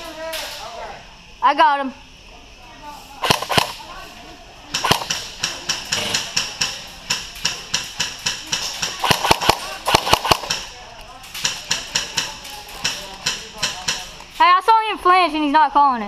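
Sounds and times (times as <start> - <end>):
airsoft guns firing: 3.2 - 3.9, 4.7 - 14.2.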